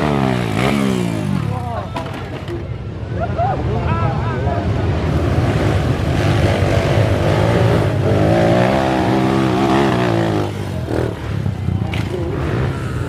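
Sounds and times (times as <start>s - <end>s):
dirt bike engine revving: 0.0s - 1.8s, 5.0s - 13.0s.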